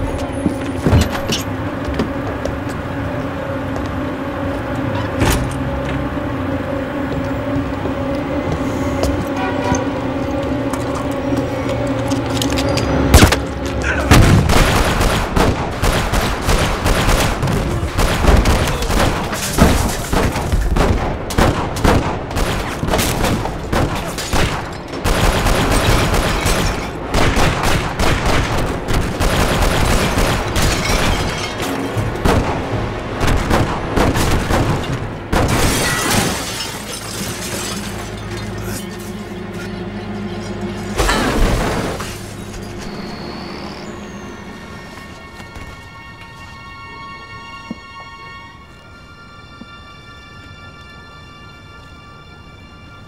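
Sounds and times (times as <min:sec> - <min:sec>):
film music: 0:00.0 - 0:53.0
gunfire bursts: 0:14.2 - 0:30.7.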